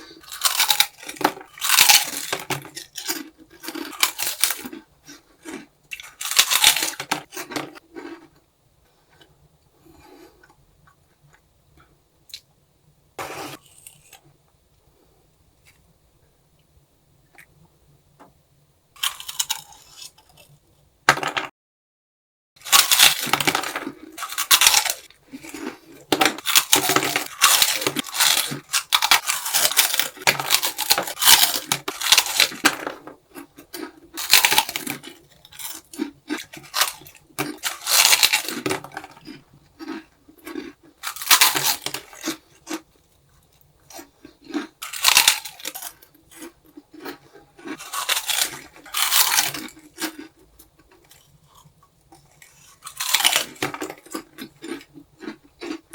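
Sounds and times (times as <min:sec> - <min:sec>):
crunching crispy snack: 0:00.0 - 0:08.4, 0:13.2 - 0:14.3, 0:19.0 - 0:20.6, 0:22.6 - 0:55.9.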